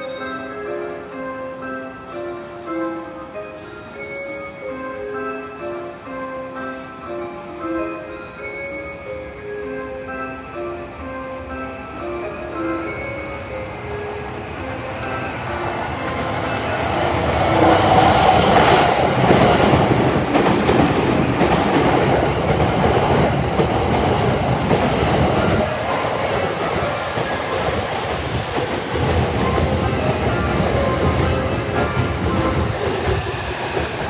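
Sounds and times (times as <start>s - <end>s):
train wheels rumbling on rails: 12.2s - 34.0s.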